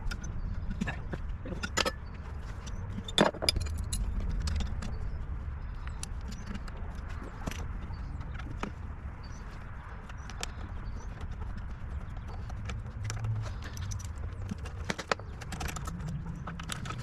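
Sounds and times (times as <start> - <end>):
hand tools clicking and clinking: 0.0 - 5.1, 12.0 - 17.0
low steady rumble: 0.0 - 17.0.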